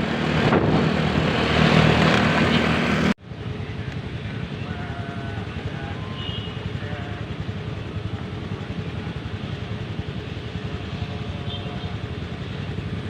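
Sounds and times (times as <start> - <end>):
wind rumble on microphone: 0.0 - 3.1
engine and traffic rumble: 0.0 - 13.0.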